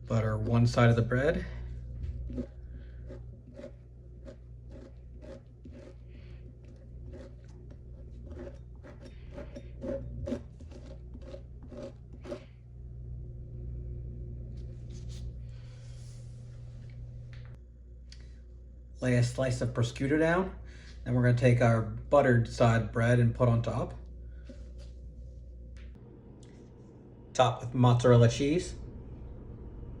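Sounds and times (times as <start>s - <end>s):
low steady hum: 0.0s - 30.0s
knife scraping butter on bread: 2.1s - 12.5s.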